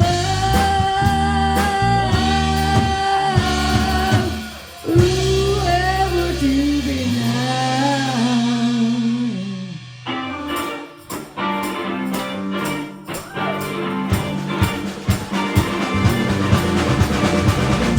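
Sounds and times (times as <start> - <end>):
guitar and bass: 0.0 - 17.9
drum hits: 14.4 - 17.9.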